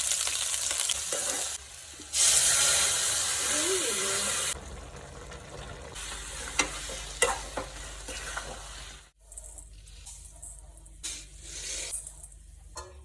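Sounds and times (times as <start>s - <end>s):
food frying in a pan: 0.0s - 9.2s.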